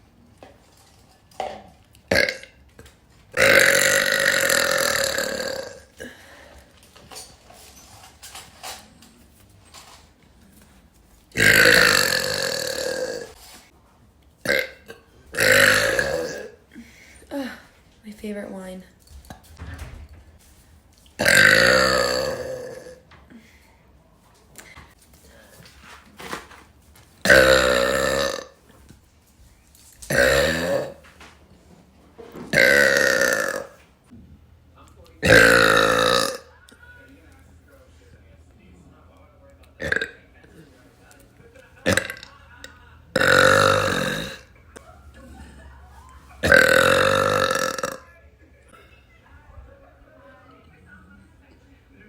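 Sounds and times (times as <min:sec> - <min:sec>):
woman burping: 0:02.1 - 0:02.6, 0:03.4 - 0:06.5, 0:11.4 - 0:13.4, 0:14.4 - 0:17.7, 0:21.2 - 0:23.4, 0:27.2 - 0:28.6, 0:30.1 - 0:31.1, 0:32.5 - 0:33.8, 0:35.2 - 0:36.5, 0:39.8 - 0:40.2, 0:41.8 - 0:42.3, 0:43.2 - 0:44.6, 0:46.4 - 0:48.1.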